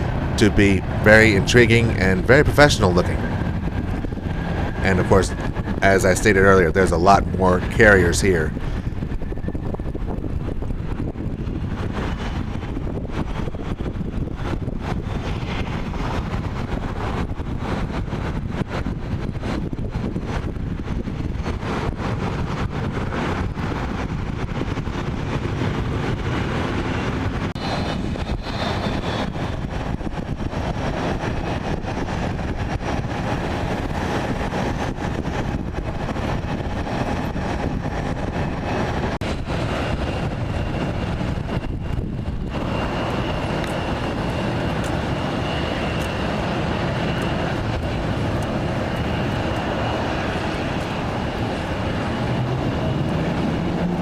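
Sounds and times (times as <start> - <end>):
jet engines running: 0.0 - 18.1, 18.7 - 54.0.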